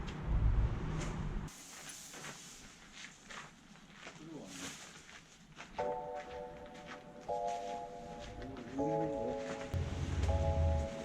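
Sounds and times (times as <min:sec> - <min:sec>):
held synth chords: 0:07.7 - 0:11.0
deep bass: 0:09.8 - 0:11.0.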